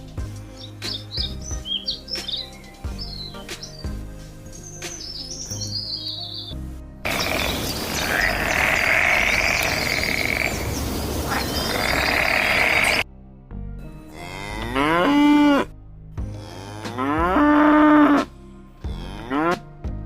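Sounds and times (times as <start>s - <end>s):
cow mooing: 7.1s - 10.7s, 11.3s - 13.0s, 14.1s - 15.7s, 16.3s - 18.3s, 18.9s - 19.6s
loud harsh noise: 7.1s - 13.0s.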